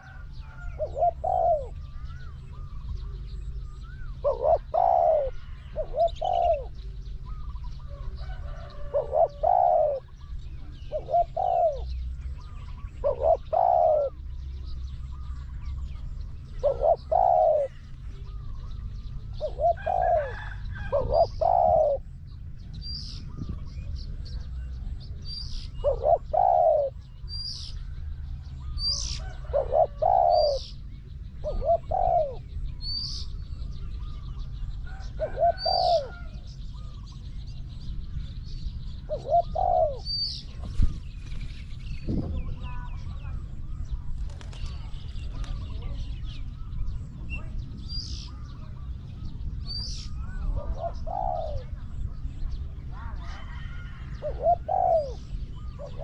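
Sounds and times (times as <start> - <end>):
doves cooing: 0.0 - 56.0.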